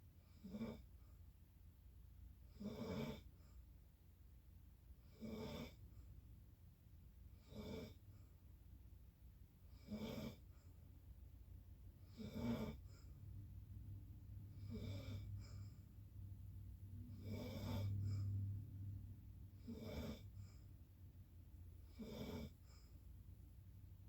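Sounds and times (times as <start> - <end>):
low steady hum: 0.0 - 2.6, 3.2 - 5.1, 5.8 - 9.8, 10.4 - 24.0
faint rasping snores: 0.3 - 1.0, 2.5 - 3.4, 5.0 - 5.8, 7.4 - 8.1, 9.7 - 10.6, 12.1 - 13.2, 14.5 - 16.0, 16.9 - 20.8, 21.8 - 23.0.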